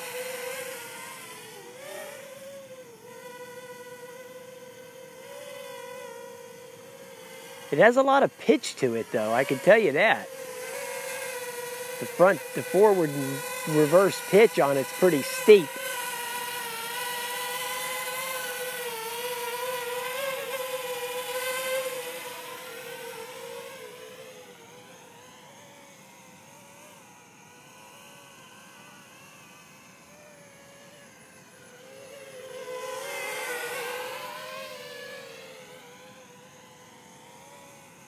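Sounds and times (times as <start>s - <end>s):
drone propellers humming: 0.0s - 21.6s.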